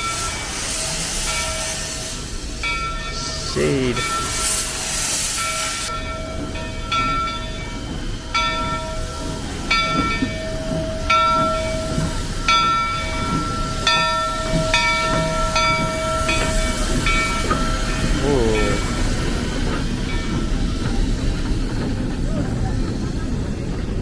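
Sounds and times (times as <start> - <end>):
train bell ringing: 0.0 - 21.8
crowd background: 17.4 - 24.0.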